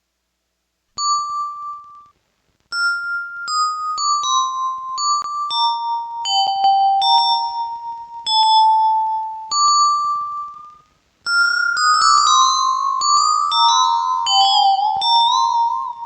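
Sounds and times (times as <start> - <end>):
electronic keyboard melody with delay: 4.2 - 10.7, 11.3 - 16.0.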